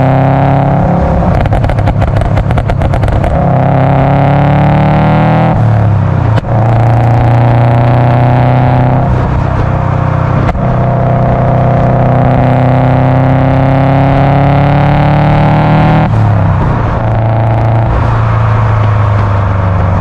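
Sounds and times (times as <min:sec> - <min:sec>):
sharp exhaust cracks: 0:00.0 - 0:04.4
car exhaust under load: 0:00.0 - 0:20.0.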